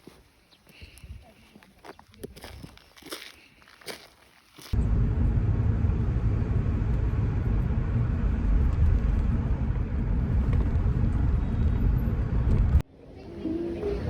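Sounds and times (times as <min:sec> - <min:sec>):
car driving rumble: 0:04.7 - 0:14.0.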